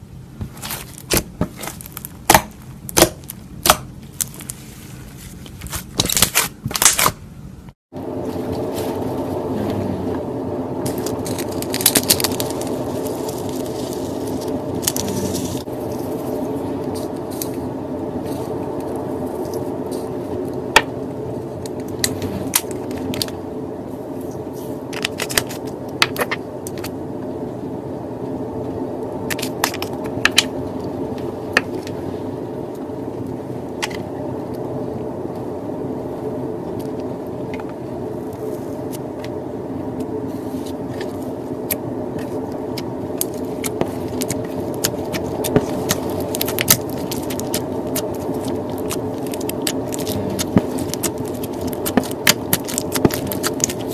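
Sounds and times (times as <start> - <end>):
steady low hum: 0.0 - 53.9
slime crackling and popping: 0.5 - 4.6, 5.5 - 7.2, 10.8 - 16.0, 25.0 - 26.9, 41.0 - 53.9.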